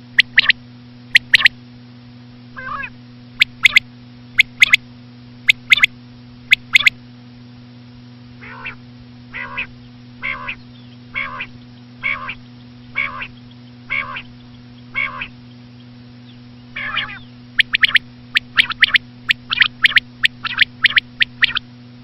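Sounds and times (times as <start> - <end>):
quail calling: 0.0 - 0.6, 1.2 - 1.5, 2.6 - 3.8, 4.4 - 4.8, 5.5 - 5.9, 6.5 - 6.9, 8.4 - 15.4, 16.7 - 21.6.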